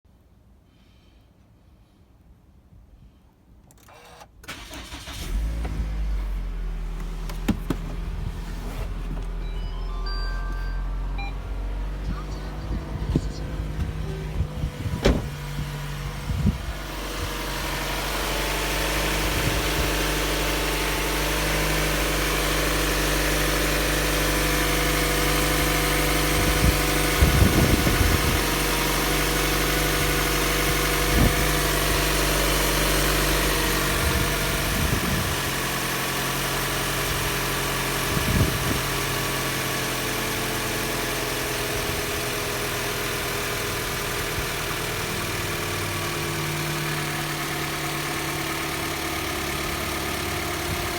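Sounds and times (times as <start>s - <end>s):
abnormal engine noise: 3.9s - 35.2s
car engine idling: 4.0s - 50.9s
brief thumps: 10.5s - 16.6s.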